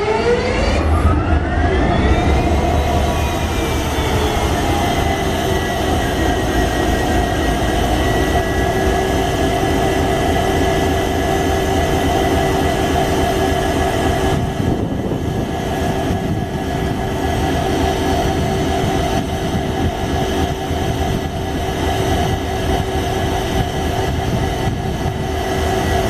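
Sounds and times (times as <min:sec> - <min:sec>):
diesel locomotive engine hum: 0:00.0 - 0:26.0.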